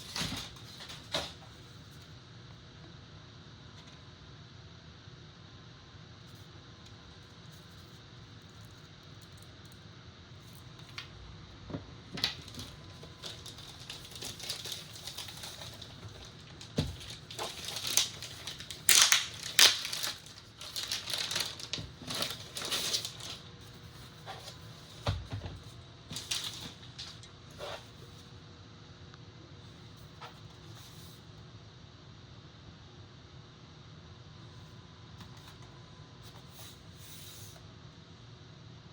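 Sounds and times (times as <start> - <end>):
packaging crinkling and rustling: 0.0 - 1.7, 12.1 - 28.2.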